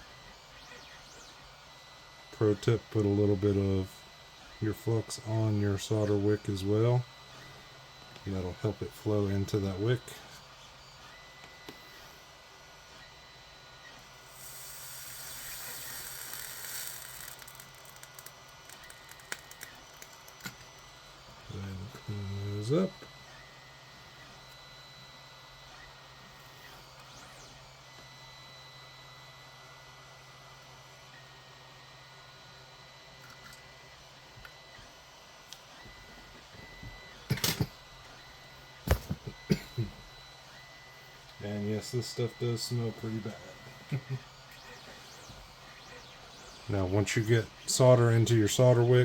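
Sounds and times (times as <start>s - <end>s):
soldering flux sizzling: 13.8s - 22.9s
small crackles: 14.4s - 20.7s.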